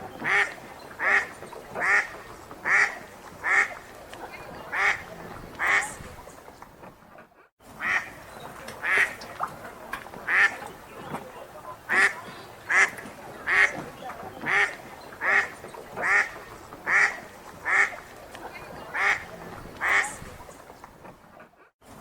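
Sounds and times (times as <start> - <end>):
duck quacking: 0.1 - 3.9, 4.6 - 6.0, 7.8 - 8.2, 8.8 - 9.2, 10.3 - 10.6, 11.9 - 13.8, 14.4 - 18.1, 18.7 - 20.2.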